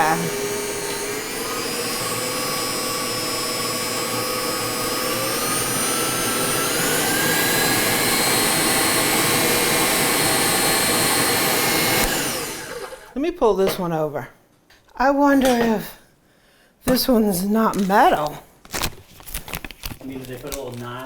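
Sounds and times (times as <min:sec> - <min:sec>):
stand mixer motor whining: 0:00.0 - 0:13.2.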